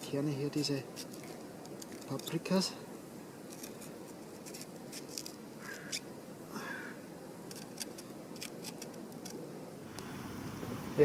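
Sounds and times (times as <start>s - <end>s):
low background noise: 0.0s - 11.0s.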